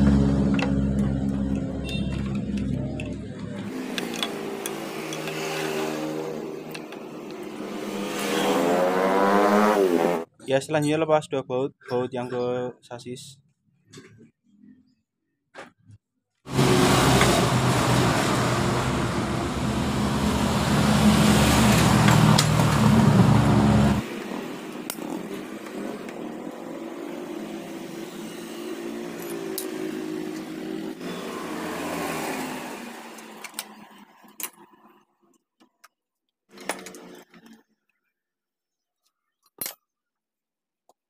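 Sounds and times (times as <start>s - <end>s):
power tool undoing bolts: 3.7s - 8.7s.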